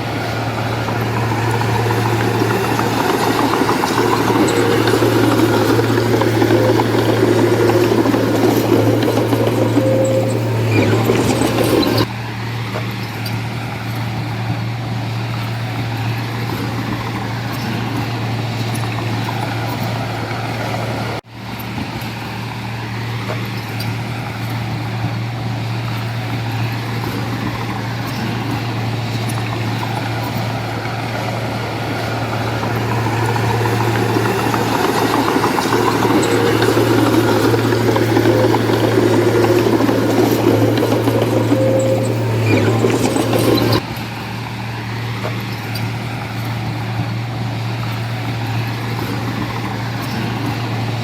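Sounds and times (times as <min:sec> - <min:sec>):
heavy diesel engine humming: 0:00.0 - 0:51.0.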